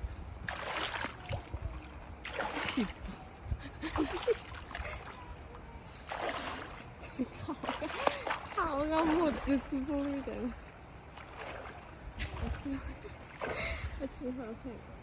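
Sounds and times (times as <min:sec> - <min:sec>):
wind on microphone: 0:00.0 - 0:05.0, 0:07.3 - 0:14.2
river water splashing: 0:00.0 - 0:14.6.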